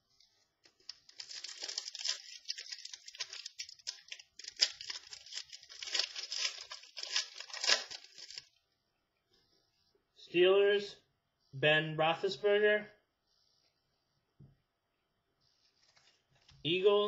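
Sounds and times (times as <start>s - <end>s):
cards and packaging crinkling: 0.2s - 8.6s.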